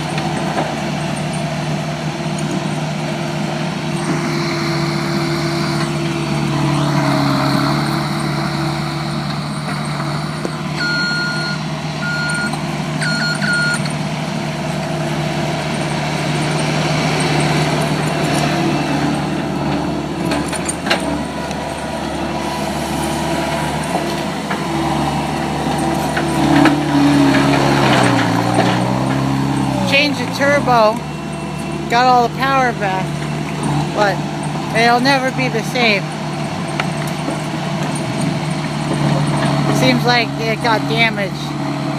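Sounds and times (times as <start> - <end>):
skid steer engine running: 0.0 - 41.9
reversing alarm beeping: 10.7 - 13.9.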